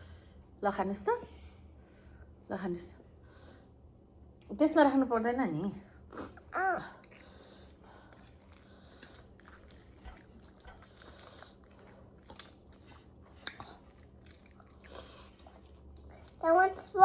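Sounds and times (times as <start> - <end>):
chewing food: 7.0 - 17.0
crackly mouth noises: 7.0 - 17.0.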